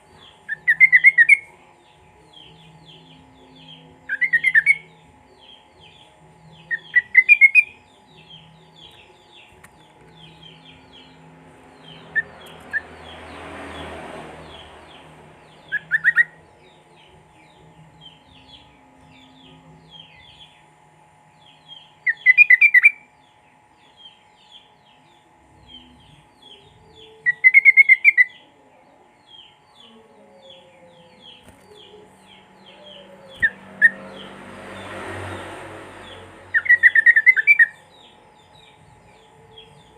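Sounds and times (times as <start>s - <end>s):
small birds chirping: 0.0s - 39.9s
bird singing trilled bursts: 36.0s - 39.9s.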